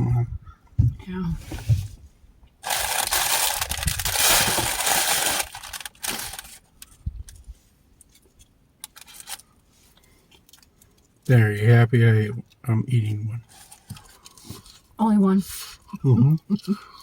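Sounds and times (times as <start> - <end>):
food wrapper crinkling: 2.6 - 7.4, 8.8 - 9.6.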